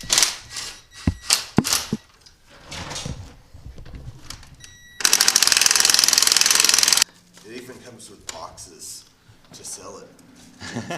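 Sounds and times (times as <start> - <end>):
power tool rattling: 5.0 - 7.0.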